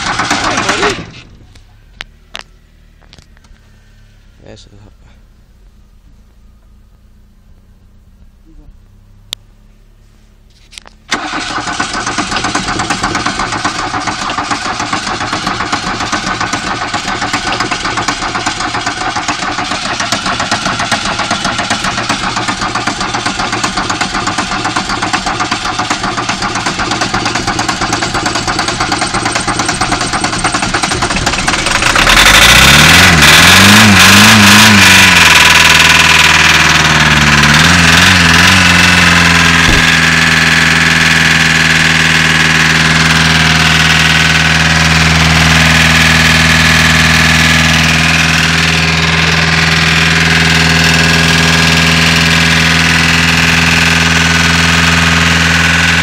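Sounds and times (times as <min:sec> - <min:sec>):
diesel engine cranking on starter: 0:00.0 - 0:04.8, 0:10.8 - 0:56.0
engine running and revving: 0:00.0 - 0:56.0
person talking: 0:08.4 - 0:08.8.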